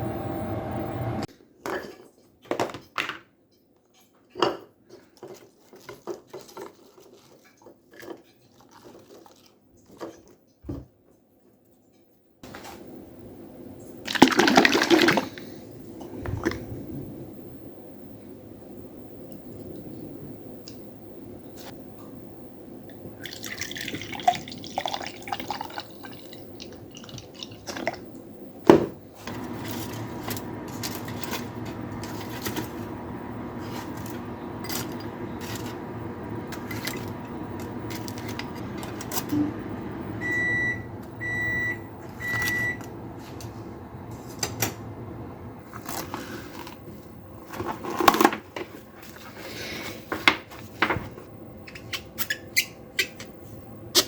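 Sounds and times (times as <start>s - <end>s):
microwave oven humming: 0.0s - 1.3s, 27.6s - 48.0s.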